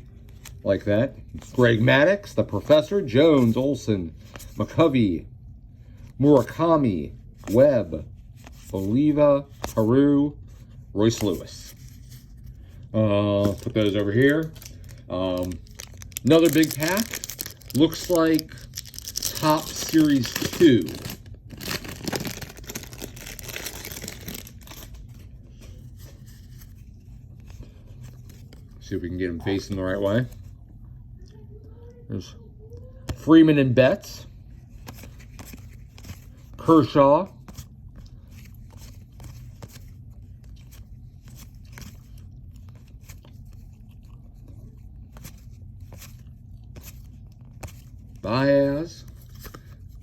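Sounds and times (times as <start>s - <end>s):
cards rustling and clicking: 0.0s - 1.9s, 7.3s - 30.6s, 34.6s - 50.0s
steady low hum: 0.0s - 50.0s
plastic bag crinkling: 13.3s - 25.2s.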